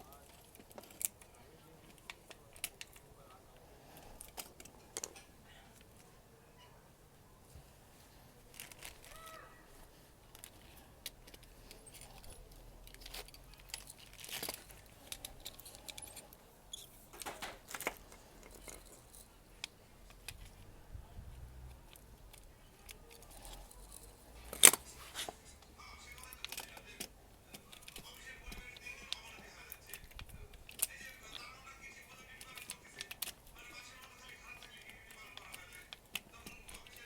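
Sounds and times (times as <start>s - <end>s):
door lock mechanism clicking and rattling: 10.4s - 19.2s.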